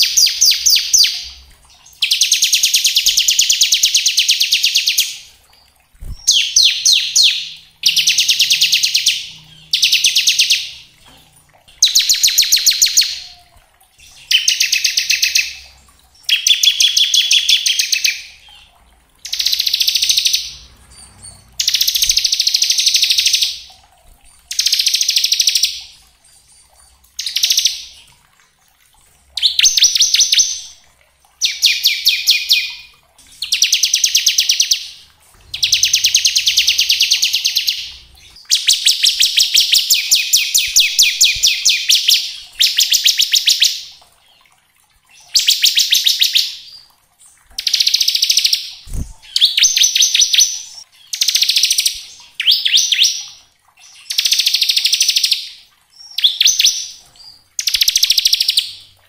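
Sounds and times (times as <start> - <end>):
bird singing buzzy trills: 31.4 - 43.7.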